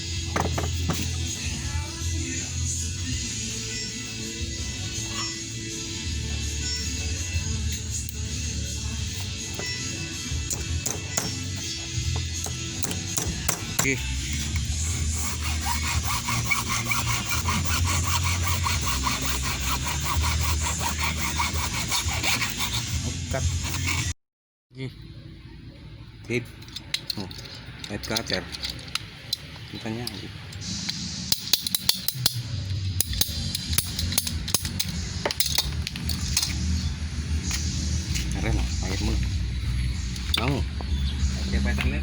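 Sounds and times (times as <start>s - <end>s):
hand saw cutting: 12.8s - 24.1s.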